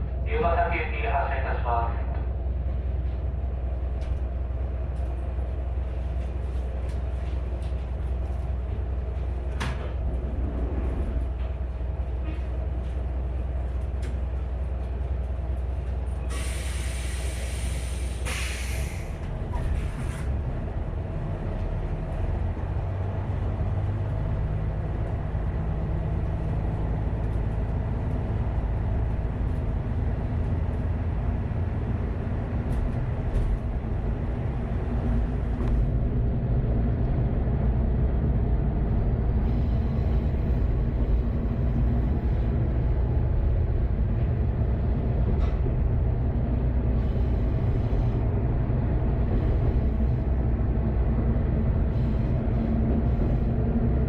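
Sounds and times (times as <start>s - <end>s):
railcar diesel engine running: 0.0s - 54.0s
air brakes hissing: 16.2s - 20.2s.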